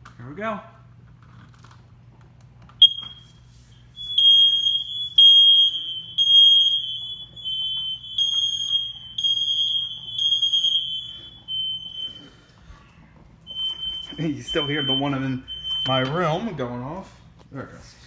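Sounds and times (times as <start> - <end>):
smoke alarm chirp: 2.8 - 12.8, 13.4 - 16.6
second alarm tone: 2.8 - 16.6
smoke alarm beeping: 2.8 - 16.8.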